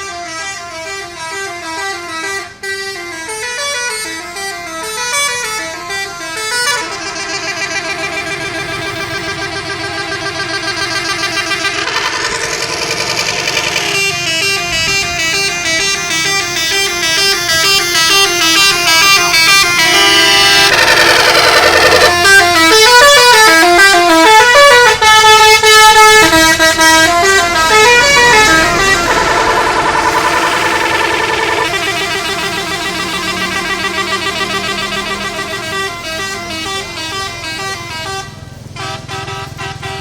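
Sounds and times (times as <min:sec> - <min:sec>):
bus horn playing a melody: 0:00.0 - 0:40.0.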